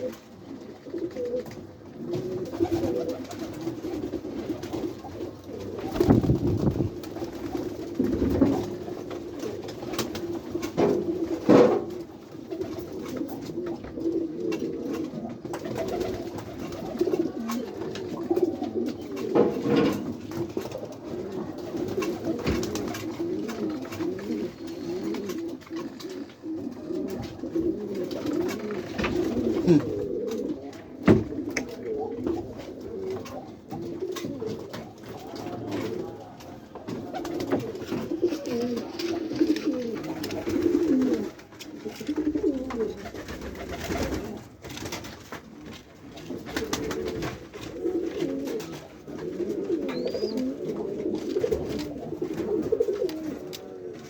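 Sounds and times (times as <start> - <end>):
pigeons cooing: 0.0 - 54.0
wing flaps and thumps: 5.8 - 8.8, 27.1 - 29.8.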